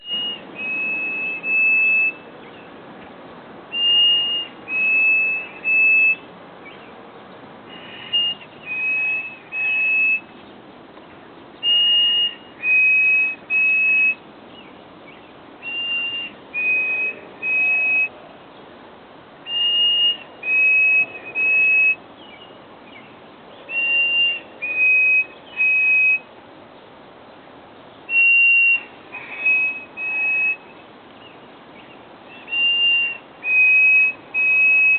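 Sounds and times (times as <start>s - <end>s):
songbird whistled song: 0.0s - 18.7s, 19.4s - 34.9s.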